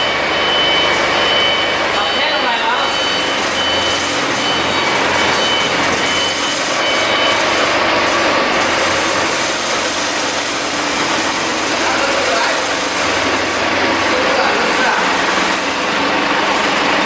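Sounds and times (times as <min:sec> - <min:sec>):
short high beeps: 0:00.0 - 0:07.8
diesel generator engine running: 0:00.0 - 0:17.0.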